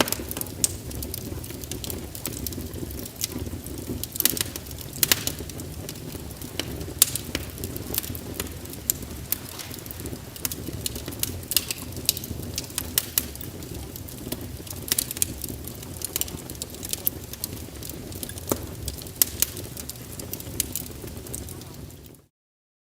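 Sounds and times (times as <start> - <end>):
wood fire crackling: 0.0 - 22.3.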